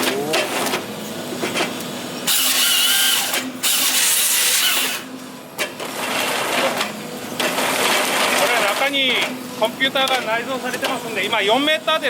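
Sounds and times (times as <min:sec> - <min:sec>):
harvester engine running: 0:00.0 - 0:12.0
harvester head bursts with whine: 0:01.5 - 0:09.4.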